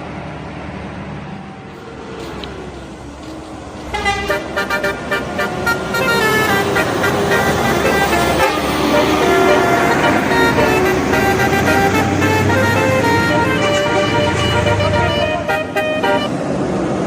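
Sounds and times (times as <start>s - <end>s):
bus engine running: 0.0s - 17.0s
musical air horn melody: 3.9s - 16.4s.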